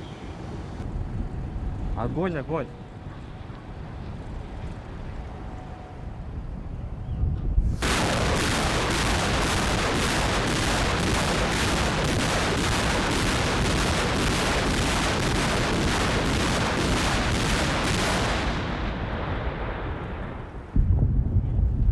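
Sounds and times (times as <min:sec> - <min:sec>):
rockets launching in rapid succession: 0:07.6 - 0:20.9.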